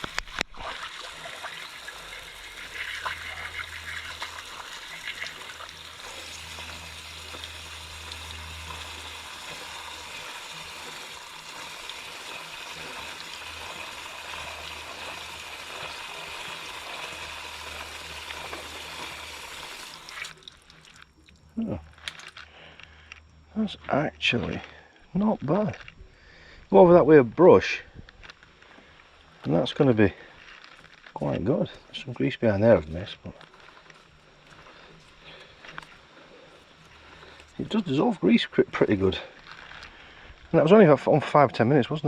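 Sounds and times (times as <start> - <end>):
water spraying on chain: 0.0 - 21.2
low hum: 1.3 - 29.4.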